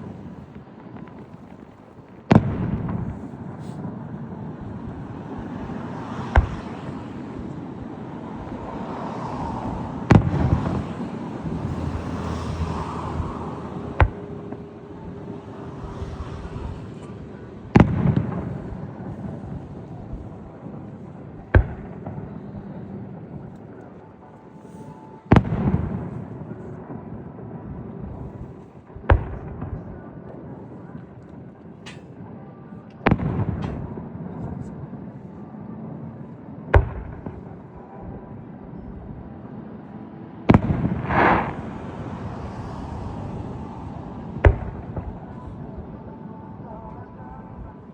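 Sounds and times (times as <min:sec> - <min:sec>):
firework bangs: 0:00.0 - 0:08.8, 0:09.4 - 0:23.6, 0:25.3 - 0:30.2, 0:33.0 - 0:35.1, 0:36.7 - 0:39.2, 0:40.5 - 0:43.5, 0:44.2 - 0:46.0
low background noise: 0:00.0 - 0:47.9
rumbling echo: 0:09.4 - 0:23.8.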